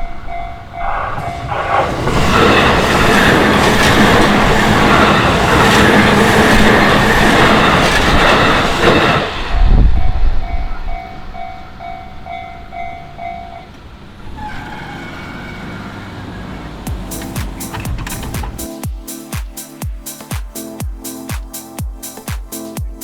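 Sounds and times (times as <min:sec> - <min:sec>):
train wheels clattering: 0:00.0 - 0:18.8
level crossing warning bell: 0:00.0 - 0:19.1
low rush of air: 0:09.2 - 0:11.4.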